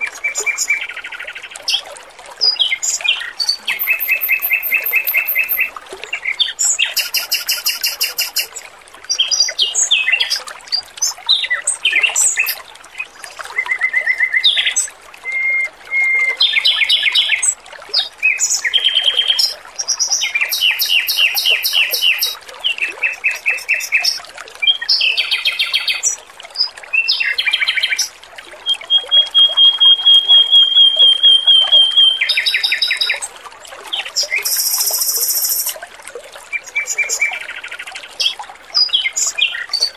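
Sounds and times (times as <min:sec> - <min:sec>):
trickling water: 0:00.0 - 0:39.9
bird singing trills and chirps: 0:02.5 - 0:05.7, 0:06.5 - 0:08.6, 0:18.5 - 0:22.4, 0:27.1 - 0:33.3, 0:34.2 - 0:35.8.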